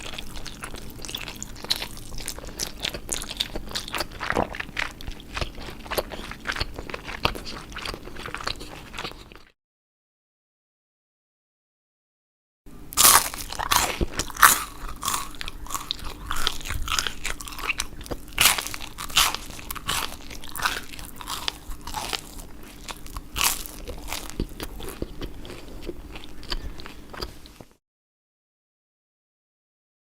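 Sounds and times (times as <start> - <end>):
crunchy toast chewing: 0.0 - 9.5, 13.0 - 27.8.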